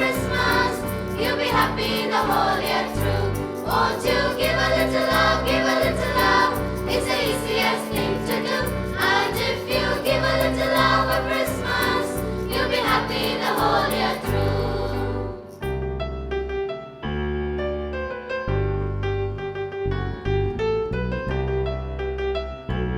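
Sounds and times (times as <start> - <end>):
choir singing: 0.0 - 15.6
keyboard and bass backing: 0.0 - 22.9.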